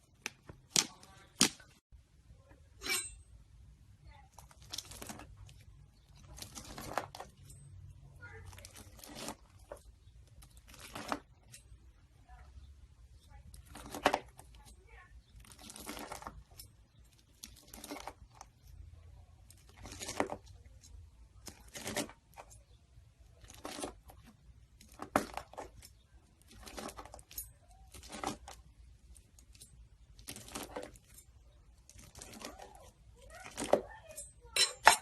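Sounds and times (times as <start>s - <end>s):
slime squishing and crackling: 4.1s - 7.5s, 8.2s - 11.6s, 13.2s - 22.6s, 23.2s - 34.2s.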